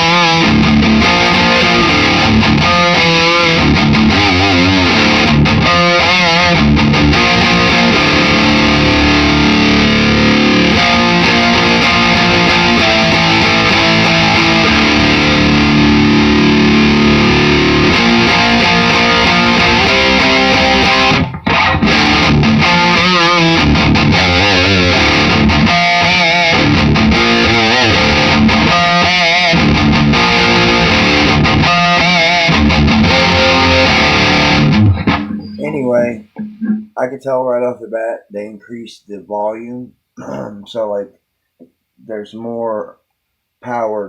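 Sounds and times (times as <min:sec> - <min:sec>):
distorted electric guitar: 0:00.0 - 0:37.0, 0:40.2 - 0:41.0.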